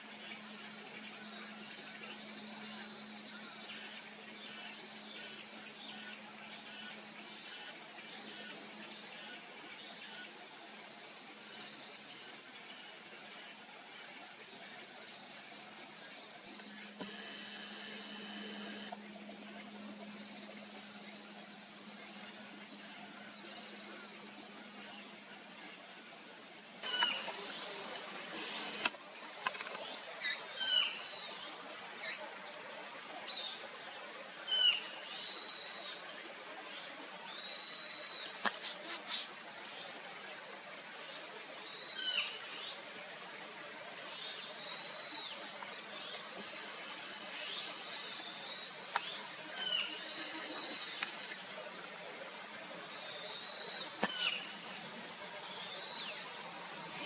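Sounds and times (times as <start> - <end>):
steady hiss: 0.0 - 57.0
birds chirping: 53.0 - 54.6.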